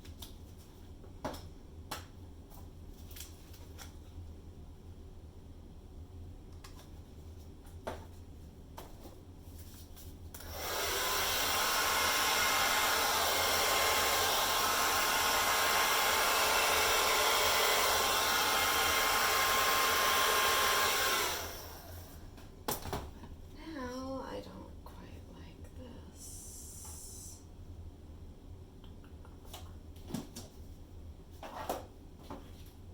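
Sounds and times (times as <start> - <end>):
hair dryer running: 10.4 - 22.2.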